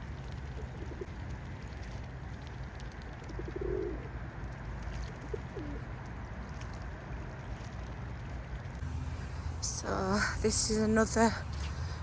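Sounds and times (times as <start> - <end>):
steady low rumble: 0.0 - 12.0
pigeons cooing: 3.2 - 4.1, 5.3 - 5.9.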